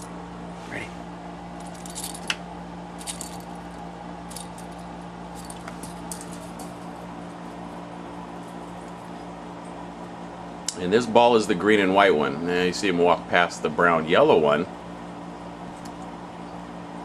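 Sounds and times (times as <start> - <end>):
low equipment hum: 0.0 - 17.0.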